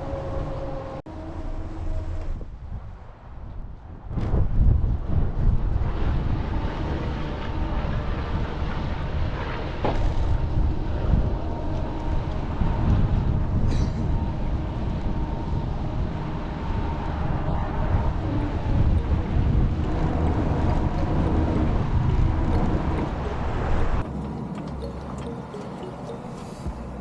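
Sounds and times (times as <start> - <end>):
wind buffeting microphone: 0.0 - 27.0
boat engine running: 6.0 - 27.0.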